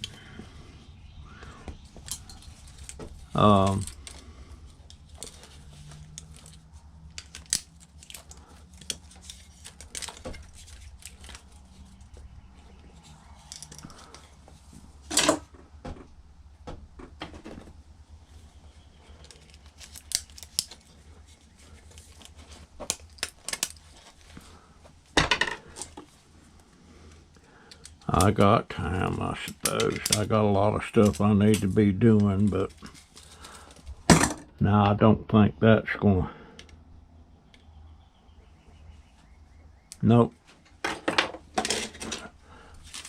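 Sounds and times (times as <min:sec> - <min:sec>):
steady low hum: 0:00.0 - 0:40.8
tools and metal parts clinking: 0:01.9 - 0:04.2, 0:13.0 - 0:14.4, 0:40.8 - 0:42.3.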